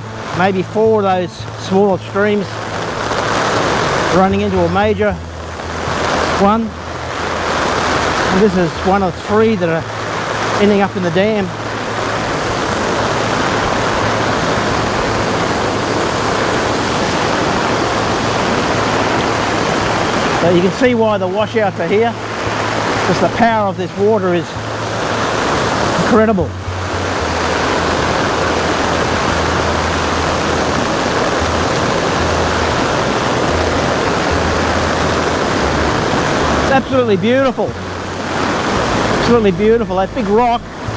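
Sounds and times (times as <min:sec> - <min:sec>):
low rumble: 0:00.0 - 0:40.9
rushing creek torrent: 0:00.0 - 0:40.9.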